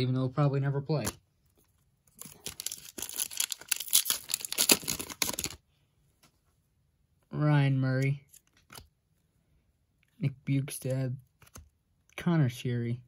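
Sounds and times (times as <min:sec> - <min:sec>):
card pack wrapper crinkling and tearing: 0:02.1 - 0:05.6.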